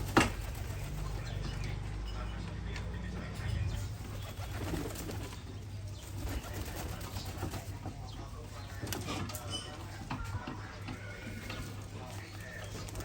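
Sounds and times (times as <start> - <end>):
wing flutters: 0.0 - 1.7, 3.7 - 9.4
pigeons cooing: 3.6 - 9.3, 10.2 - 13.0.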